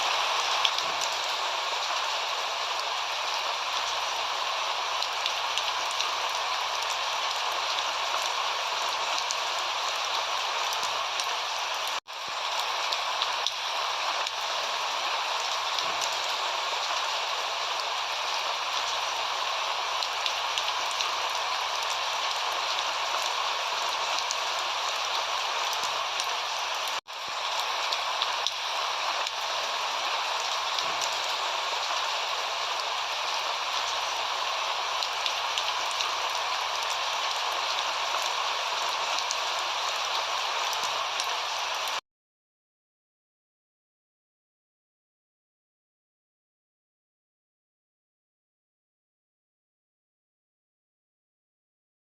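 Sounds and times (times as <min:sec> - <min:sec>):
steady rain falling: 0:00.0 - 0:42.0.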